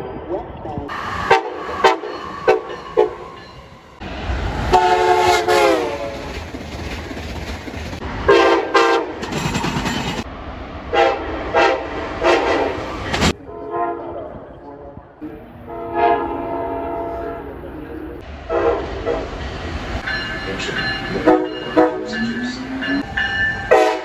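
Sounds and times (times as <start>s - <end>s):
rumble of passing train: 0.0s - 24.0s
locomotive air horn blasts: 1.2s - 3.2s, 4.7s - 6.2s, 8.3s - 9.1s, 11.0s - 12.7s, 13.4s - 14.1s, 15.6s - 17.5s, 18.5s - 19.2s, 23.7s - 24.0s.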